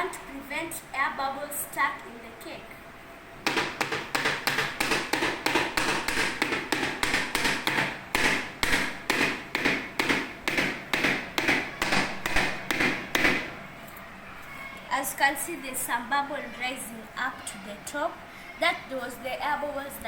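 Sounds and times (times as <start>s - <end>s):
cake pan knocking on hard surface: 3.5s - 13.5s.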